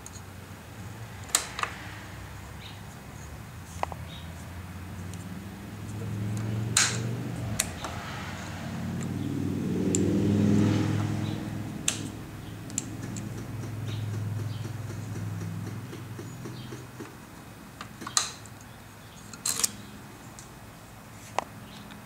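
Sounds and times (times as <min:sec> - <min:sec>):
motorcycle engine cranking: 0:06.2 - 0:08.0, 0:11.0 - 0:17.0, 0:19.3 - 0:19.9
sharp clicks: 0:11.8 - 0:17.2.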